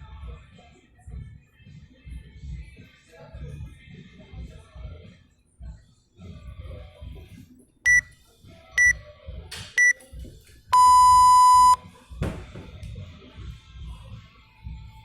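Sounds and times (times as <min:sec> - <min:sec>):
long lower beep: 0:10.8 - 0:11.8
short high beeps: 0:10.8 - 0:11.8.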